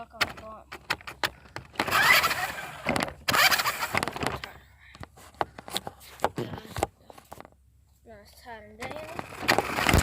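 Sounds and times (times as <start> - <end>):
toy car electric motor revving: 1.8 - 4.4, 9.0 - 10.0.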